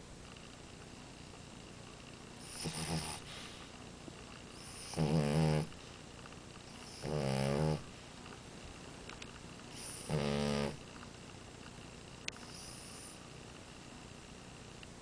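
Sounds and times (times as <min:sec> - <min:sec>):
dog snoring: 0:02.4 - 0:03.6, 0:04.5 - 0:05.8, 0:06.7 - 0:08.0, 0:09.7 - 0:10.9, 0:12.3 - 0:13.2.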